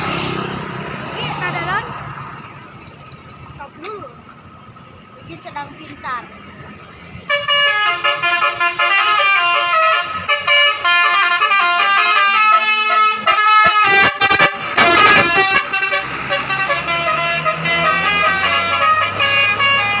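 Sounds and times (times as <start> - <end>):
musical bus horns: 7.2 - 20.0.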